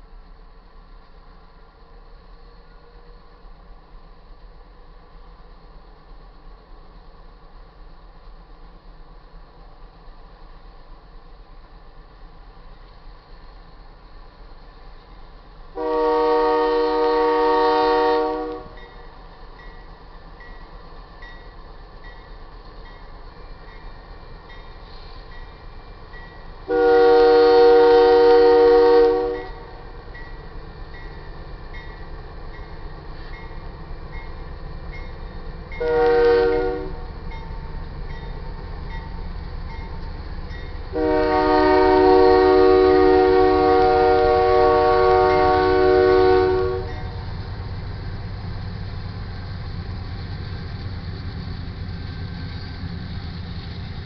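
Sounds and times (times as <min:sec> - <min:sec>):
locomotive air horn blasts: 0:15.7 - 0:18.8, 0:26.7 - 0:29.7, 0:35.8 - 0:37.0, 0:40.9 - 0:47.1.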